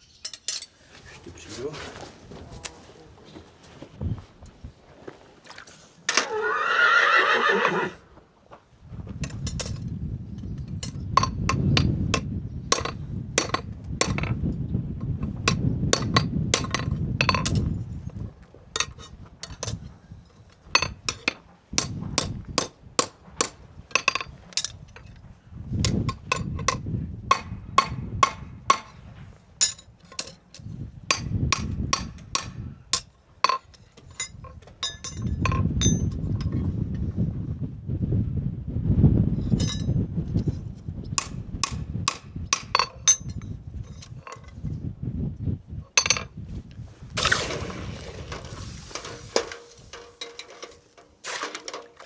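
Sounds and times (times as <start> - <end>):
horse whinnying: 6.1 - 8.0.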